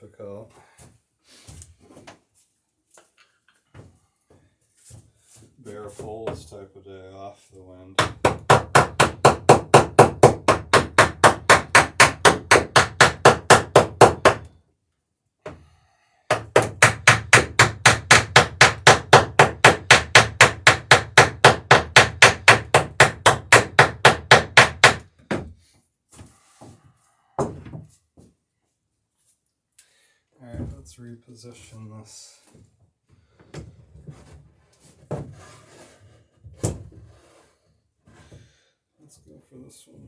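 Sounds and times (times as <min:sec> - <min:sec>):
separate knocks: 0:08.0 - 0:14.4, 0:16.3 - 0:25.4.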